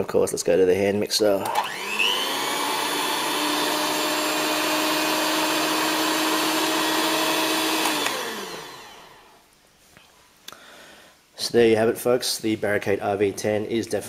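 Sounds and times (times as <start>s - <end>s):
electric hand mixer whining: 1.4s - 9.4s.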